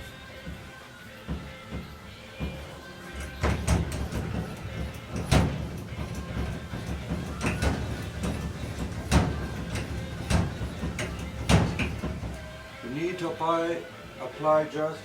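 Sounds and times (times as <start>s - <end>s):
dull knocks on steel roof: 1.2s - 12.6s.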